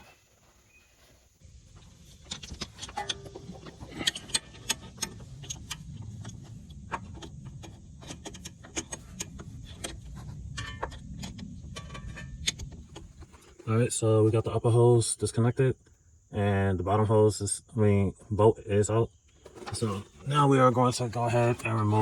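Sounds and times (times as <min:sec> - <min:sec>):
low handling rumble: 0:19.4 - 0:22.0.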